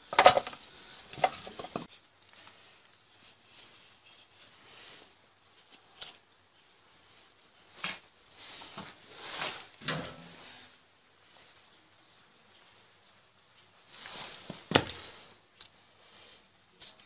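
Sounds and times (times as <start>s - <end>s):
scraping rustle: 1.1s - 6.3s, 7.0s - 10.7s.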